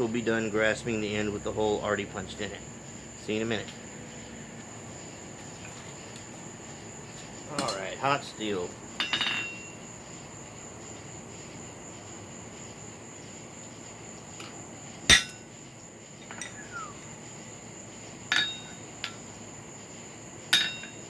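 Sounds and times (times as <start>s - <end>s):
hammer striking punch: 15.1s - 15.4s.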